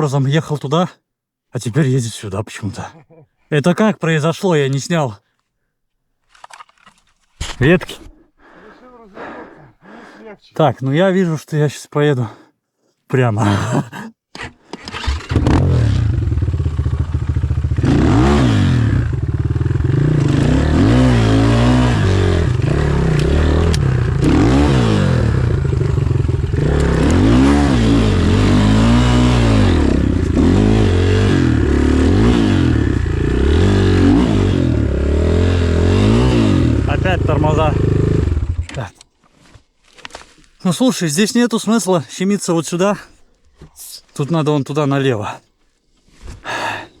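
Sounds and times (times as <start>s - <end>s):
motorcycle engine revving: 14.9s - 38.9s.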